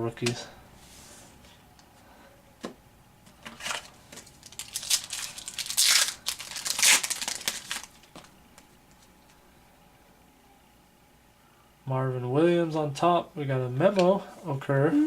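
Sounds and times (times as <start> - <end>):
wrapper tearing and crinkling: 3.6 - 8.3.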